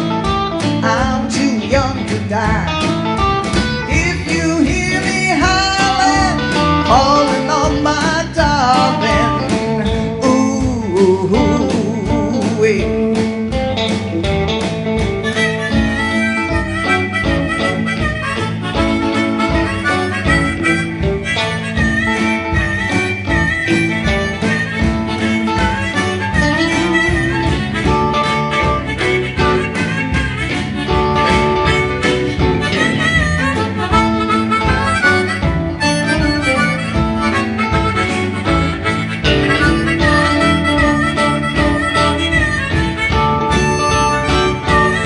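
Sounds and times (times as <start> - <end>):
blues harmonica solo: 0.0 - 45.0
live band playing: 0.0 - 45.0
person singing: 0.6 - 3.2, 3.8 - 13.8.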